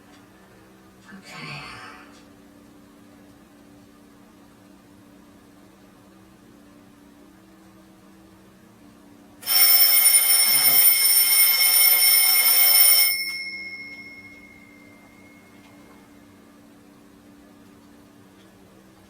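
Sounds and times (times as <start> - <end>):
alarm clock bell ringing: 9.4 - 15.8.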